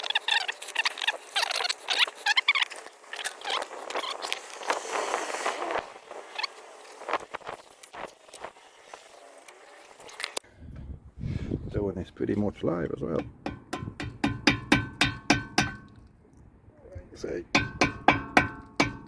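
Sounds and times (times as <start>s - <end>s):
tools clanking on metal brake parts: 13.2s - 16.0s, 17.6s - 19.0s.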